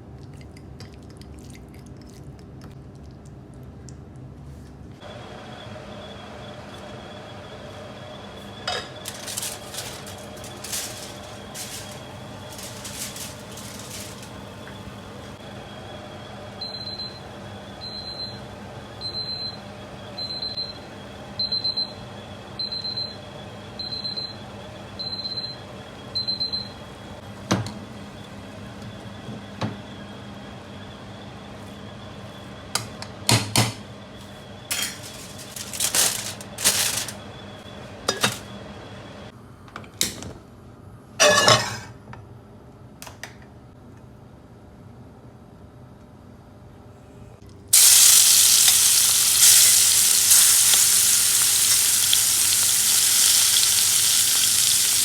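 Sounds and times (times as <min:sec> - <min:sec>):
scraping and rustling: 0:09.0 - 0:14.4, 0:34.7 - 0:37.2
kitchen appliance beeps: 0:15.5 - 0:27.0, 0:47.8 - 0:55.0.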